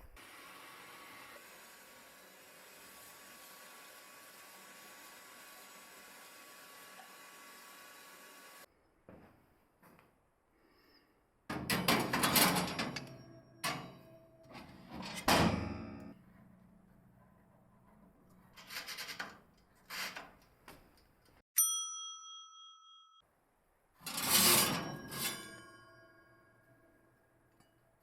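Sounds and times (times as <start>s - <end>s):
bright metallic ding: 21.6s - 23.2s.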